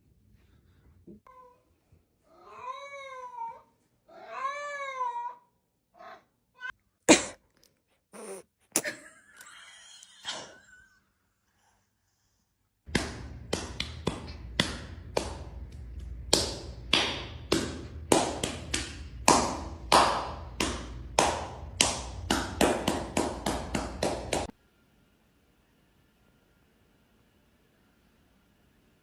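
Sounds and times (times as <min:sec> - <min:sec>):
steady low hum: 0:12.9 - 0:28.5.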